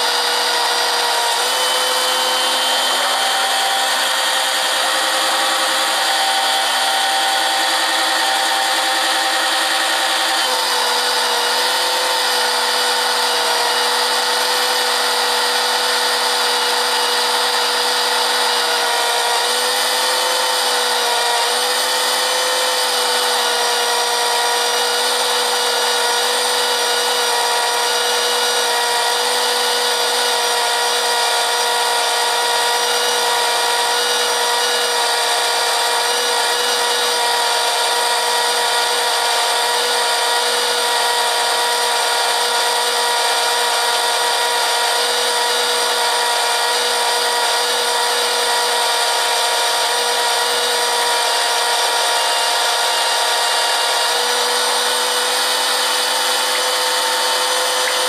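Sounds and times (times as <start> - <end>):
garden tractor engine running: 0.0 - 13.9.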